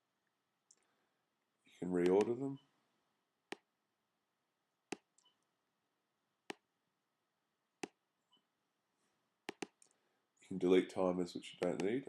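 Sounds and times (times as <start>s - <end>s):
mouse button clicks: 2.0s - 2.4s, 9.5s - 9.8s.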